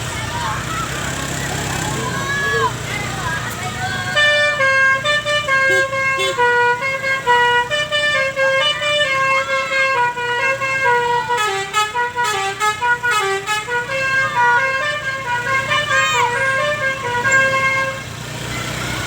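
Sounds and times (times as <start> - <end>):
bus air horn playing melody: 4.0 - 18.3.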